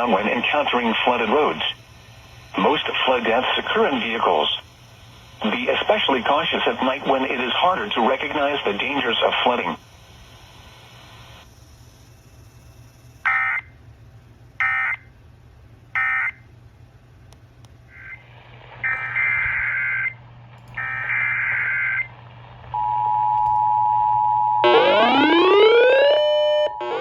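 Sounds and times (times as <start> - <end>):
screechy digital data bursts: 0.0 - 13.7, 17.9 - 20.2, 20.8 - 22.1
rising siren-like sweeping tone: 23.8 - 27.0.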